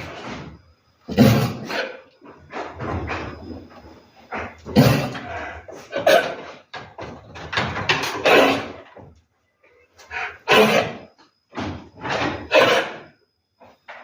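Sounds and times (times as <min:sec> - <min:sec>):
animal coughing harshly: 0:01.1 - 0:02.0, 0:04.6 - 0:06.6, 0:08.0 - 0:08.9, 0:10.4 - 0:11.1, 0:12.4 - 0:13.1.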